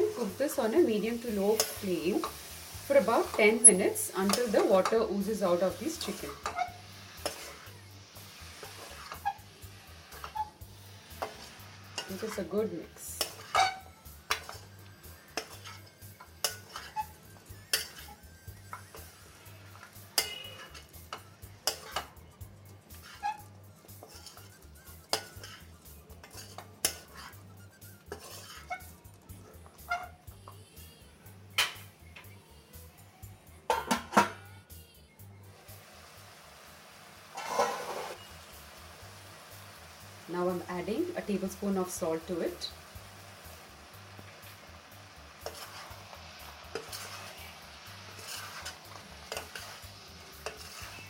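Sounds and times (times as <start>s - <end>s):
light sizzle: 0.0s - 34.0s, 35.2s - 51.0s
utensil scraping a pan: 1.2s - 7.7s, 8.3s - 14.7s, 15.3s - 22.1s, 22.9s - 30.2s, 37.3s - 38.3s, 45.3s - 51.0s.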